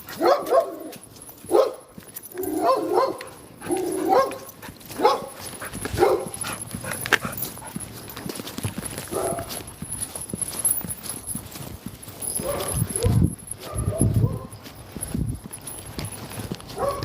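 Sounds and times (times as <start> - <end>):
dog whining and yipping: 12.4 - 14.6.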